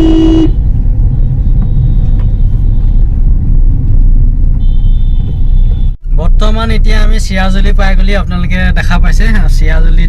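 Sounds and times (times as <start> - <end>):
horn blast: 0.0 - 0.6
wind noise: 0.0 - 6.0
vehicle road rumble: 0.0 - 10.0.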